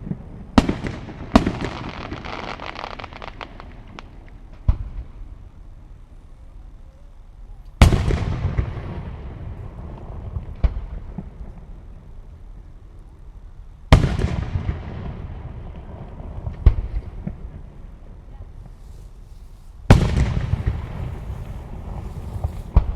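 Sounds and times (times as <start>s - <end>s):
firework shells booming: 0.0s - 5.3s, 19.8s - 22.9s
firework sharp bang: 19.9s - 22.9s.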